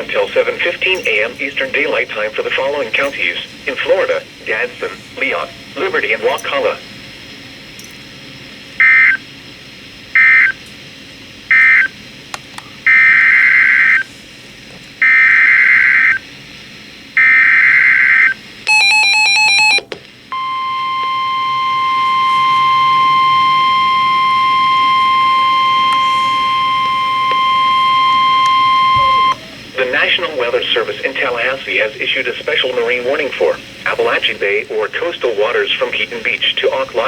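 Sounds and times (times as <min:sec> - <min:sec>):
steady warning tone: 0:00.0 - 0:06.9, 0:10.2 - 0:10.7, 0:11.5 - 0:12.0, 0:17.2 - 0:37.0
rapidly alternating tones: 0:20.3 - 0:29.9
warbling data bursts: 0:20.4 - 0:30.3.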